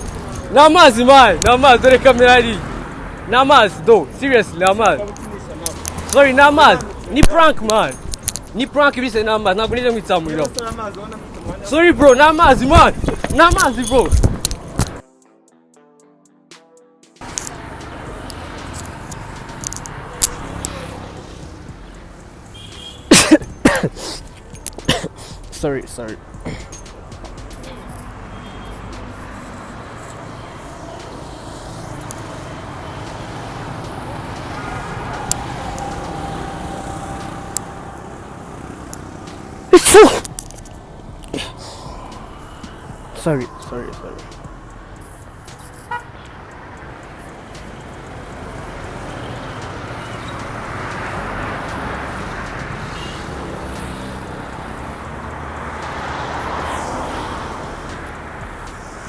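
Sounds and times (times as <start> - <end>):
road traffic hum: 0.0 - 15.0, 17.2 - 59.0
vehicle passing: 0.0 - 15.0, 17.2 - 23.6, 24.2 - 59.0.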